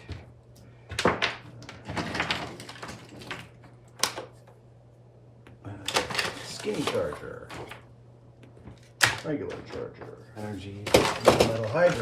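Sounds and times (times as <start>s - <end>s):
electronics parts rustling and clattering: 0.9s - 4.3s, 5.8s - 7.8s, 8.6s - 12.0s.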